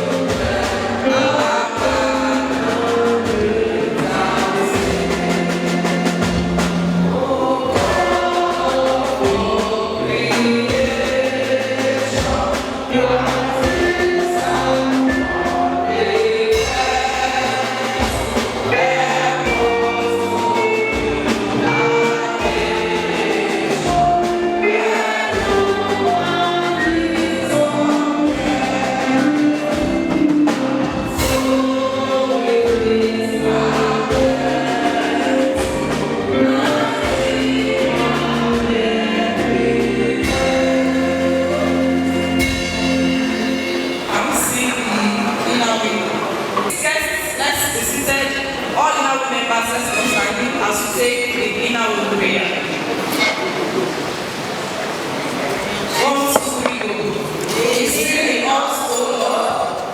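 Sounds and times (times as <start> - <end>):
instrumental accompaniment with beat: 0.0 - 45.4
crowd singing in chorus: 0.0 - 59.9.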